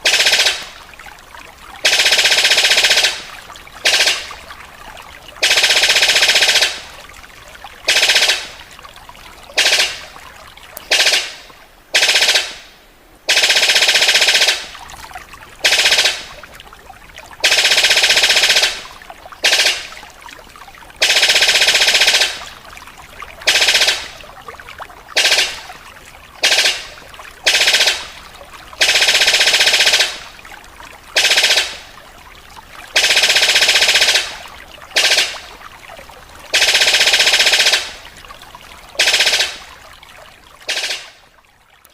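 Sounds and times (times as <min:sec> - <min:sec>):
bird calling in rattling bursts: 0:00.0 - 0:00.8, 0:01.8 - 0:07.0, 0:07.8 - 0:08.7, 0:09.4 - 0:12.6, 0:13.3 - 0:16.5, 0:17.4 - 0:20.0, 0:20.9 - 0:24.2, 0:25.1 - 0:30.3, 0:31.2 - 0:31.9, 0:32.9 - 0:35.6, 0:36.5 - 0:39.7, 0:40.6 - 0:41.3.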